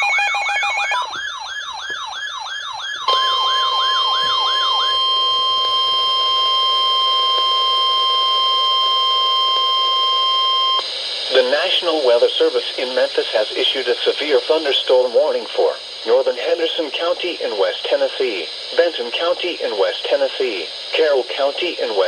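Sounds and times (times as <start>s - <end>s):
electronic siren sweeps: 0.0s - 10.8s
steady alarm tone: 0.0s - 22.0s.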